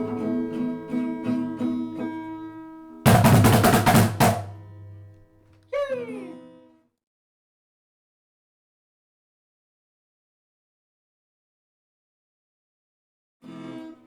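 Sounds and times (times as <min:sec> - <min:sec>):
drum hits: 0:03.1 - 0:05.1.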